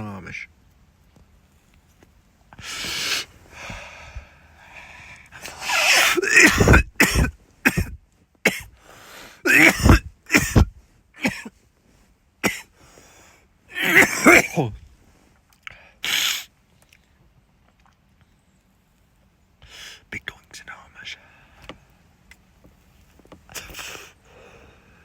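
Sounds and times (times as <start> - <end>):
breathy hiss: 2.6 - 7.8, 8.5 - 10.9, 11.9 - 14.3, 15.0 - 16.6, 19.6 - 20.1, 23.5 - 25.0
man coughing harshly: 5.5 - 8.8, 9.5 - 11.5, 12.4 - 12.7, 13.7 - 14.8.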